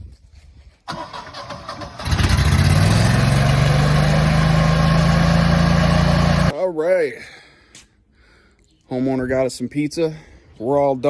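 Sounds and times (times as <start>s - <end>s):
generator engine cranking and running: 0.9s - 6.5s.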